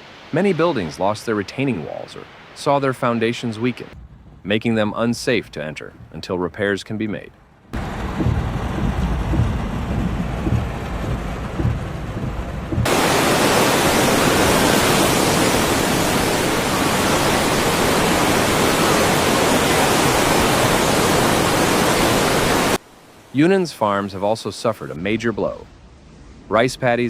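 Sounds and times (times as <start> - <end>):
rushing water: 0.0 - 4.0, 7.8 - 24.8
low uneven rumble: 3.8 - 13.0.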